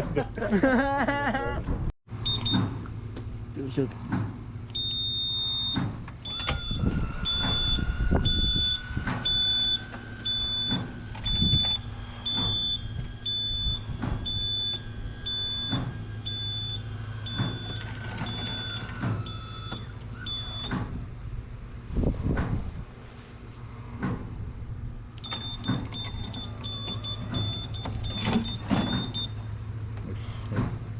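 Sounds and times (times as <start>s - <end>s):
steady machine hum: 2.1s - 21.9s
electronic warning beeps: 2.2s - 2.7s, 4.8s - 20.8s, 25.2s - 29.4s.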